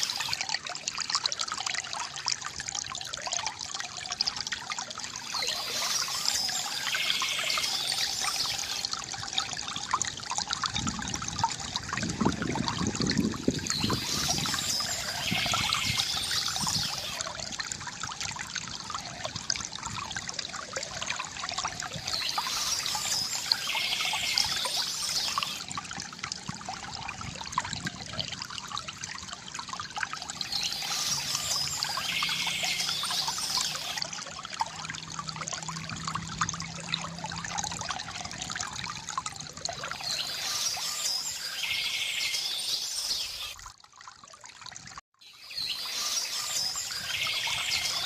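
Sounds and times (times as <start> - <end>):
water trickling from fountain: 0.0 - 48.0
birds chirping: 5.2 - 8.8, 13.6 - 17.2, 22.0 - 25.6, 30.4 - 34.0, 39.9 - 43.6, 45.3 - 48.0.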